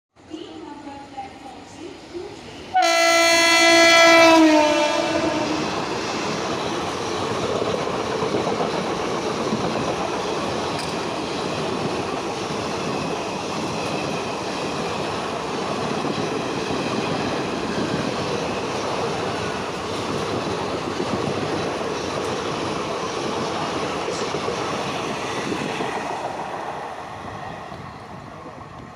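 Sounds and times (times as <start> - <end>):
train coaches rushing past: 1.0 - 28.9
locomotive air horn: 2.7 - 5.7.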